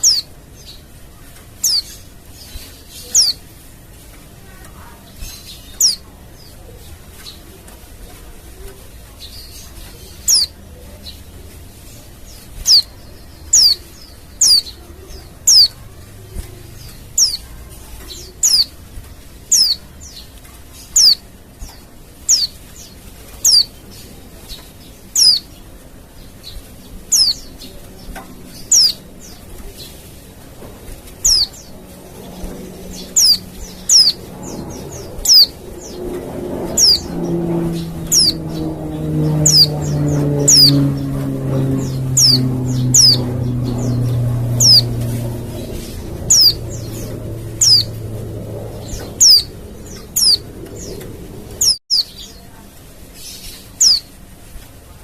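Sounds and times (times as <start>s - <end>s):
bird giving sharp high calls: 17.2s - 17.4s, 38.1s - 38.5s.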